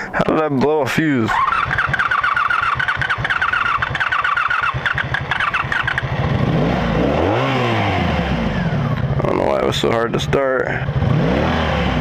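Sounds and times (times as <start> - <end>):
engine catching: 0.2 - 9.8
starter cranking engine: 1.2 - 6.6.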